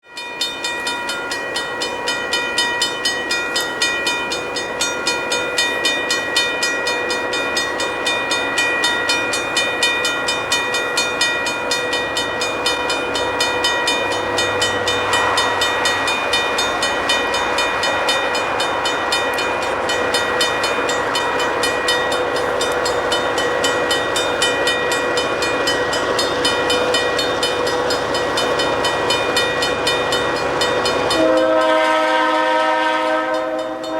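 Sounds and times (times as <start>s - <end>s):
steady ringing tones: 0.1s - 33.9s
train wheels clattering: 0.3s - 33.9s.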